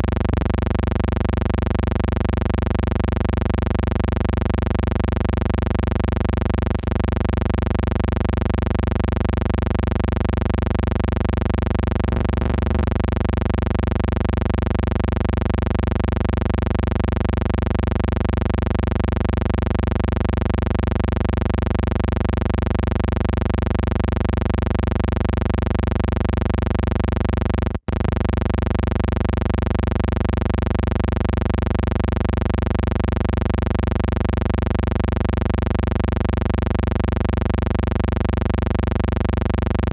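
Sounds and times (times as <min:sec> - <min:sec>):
electrical buzzing hum: 0:00.0 - 0:00.8, 0:11.9 - 0:13.6, 0:27.4 - 0:29.6.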